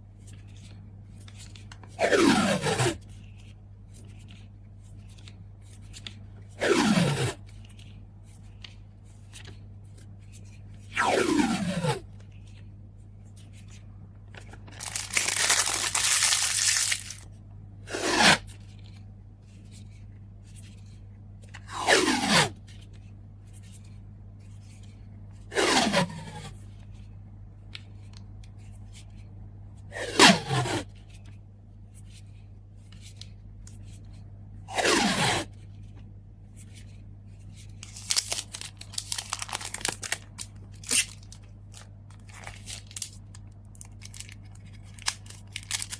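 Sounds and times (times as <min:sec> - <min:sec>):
crinkly rustling: 0:14.2 - 0:17.3, 0:37.7 - 0:45.9
tape pulled off roll screeching: 0:25.5 - 0:26.5.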